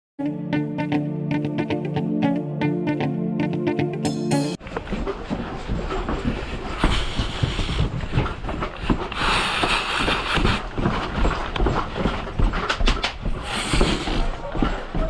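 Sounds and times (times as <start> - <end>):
gear knocking and rattling: 4.7 - 13.4.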